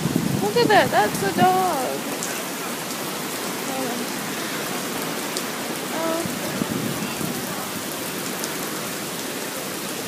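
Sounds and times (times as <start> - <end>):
heavy rain pouring: 0.0 - 10.0.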